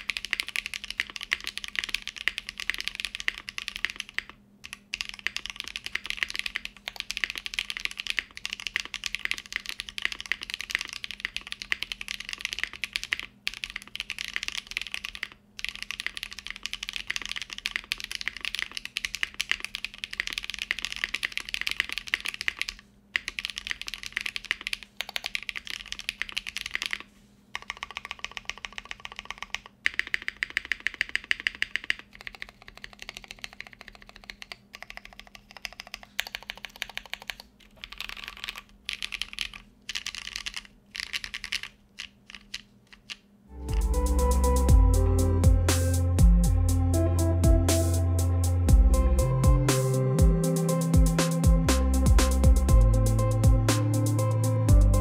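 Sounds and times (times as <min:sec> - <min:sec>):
fast mechanical keyboard typing: 0:00.0 - 0:43.2.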